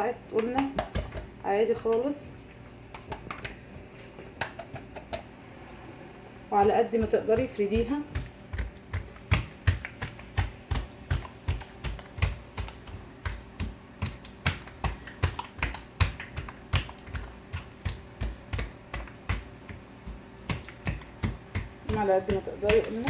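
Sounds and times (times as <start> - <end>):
hands slapping dough on surface: 0.3 - 2.2, 2.8 - 5.4, 6.6 - 23.0.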